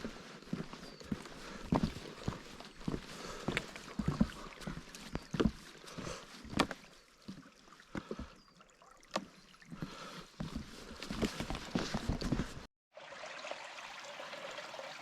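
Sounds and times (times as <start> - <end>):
footsteps on a trail: 0.0 - 8.4, 9.2 - 12.7.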